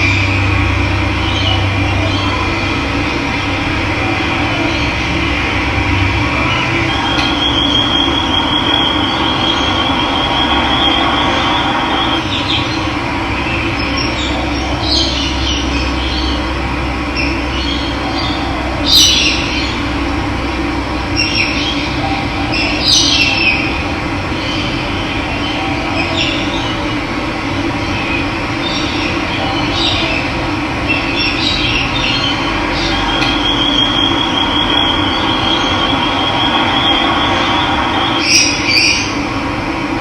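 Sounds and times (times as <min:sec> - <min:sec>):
water rushing: 0:00.0 - 0:13.4, 0:32.4 - 0:40.0
bird trilling: 0:06.3 - 0:12.8, 0:31.2 - 0:39.2.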